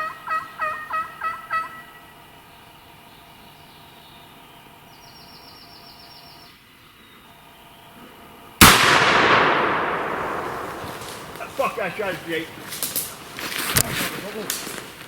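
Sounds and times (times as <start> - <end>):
shotgun shot ringing out: 8.6 - 12.0.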